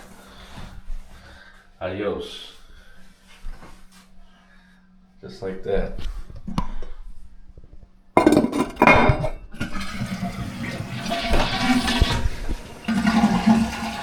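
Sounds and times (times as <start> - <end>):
toilet flushing: 8.2 - 14.0.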